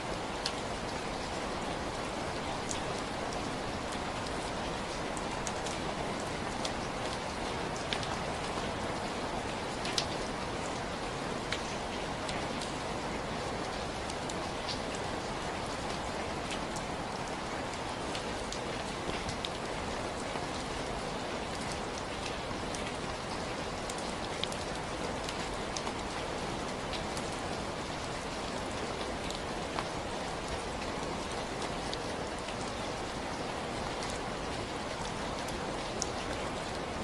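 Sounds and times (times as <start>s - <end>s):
steady rainfall: 0.0s - 37.0s.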